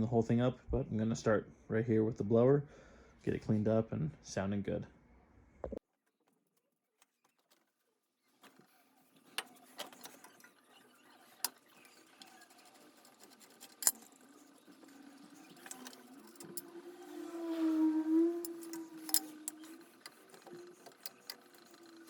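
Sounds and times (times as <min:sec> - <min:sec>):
mechanical whir: 0:09.4 - 0:22.0
metal parts clicking and knocking: 0:12.2 - 0:14.2, 0:18.4 - 0:22.0.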